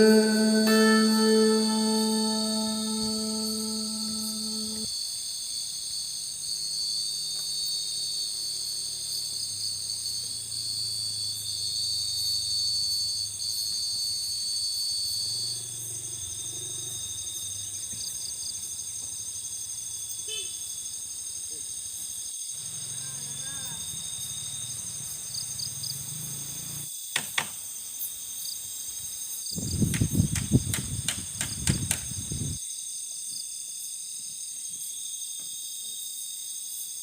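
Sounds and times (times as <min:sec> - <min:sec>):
faint low hum: 0:00.0 - 0:04.9
insects chirring: 0:00.0 - 0:37.0.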